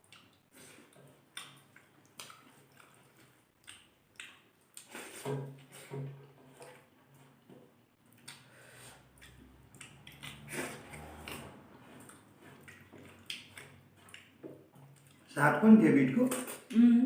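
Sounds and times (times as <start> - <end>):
chewing and biting: 0.0 - 5.2, 9.1 - 15.3.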